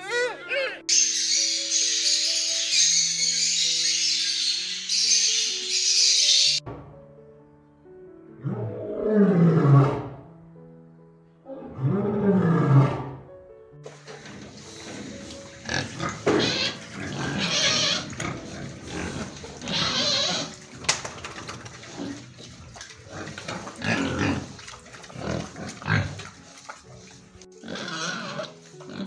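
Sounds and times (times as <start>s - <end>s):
pigs grunting: 13.9s - 29.0s.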